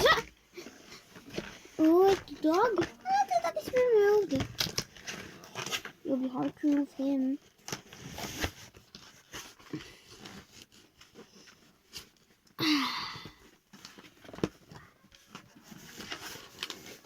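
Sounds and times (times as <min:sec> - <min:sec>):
packaging clicks and rustles: 0:00.0 - 0:12.6, 0:13.4 - 0:17.0
breathy vocal sound: 0:12.6 - 0:13.4.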